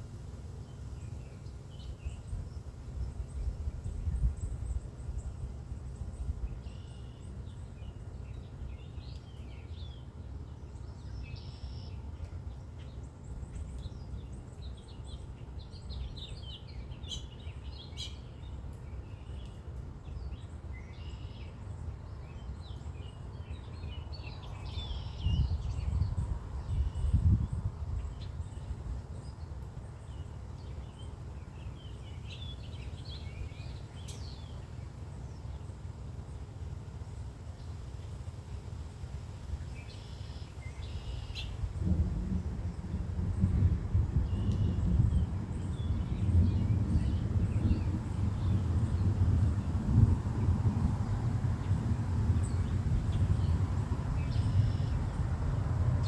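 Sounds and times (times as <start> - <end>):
songbirds chirping: 0.0 - 56.0
low rumble: 41.5 - 56.0.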